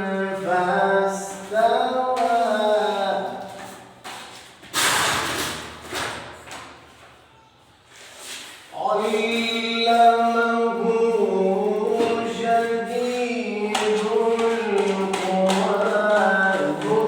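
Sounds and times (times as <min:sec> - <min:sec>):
person singing unaccompanied: 0:00.0 - 0:03.6, 0:08.8 - 0:17.0.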